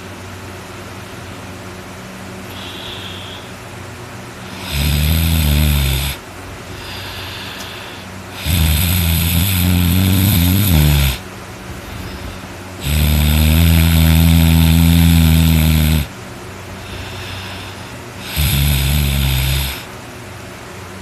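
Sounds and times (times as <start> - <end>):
person snoring loudly: 2.5 - 3.5, 4.4 - 11.2, 11.9 - 16.1, 16.8 - 19.9
quiet breathing: 2.5 - 3.6, 4.4 - 16.1, 16.7 - 19.9.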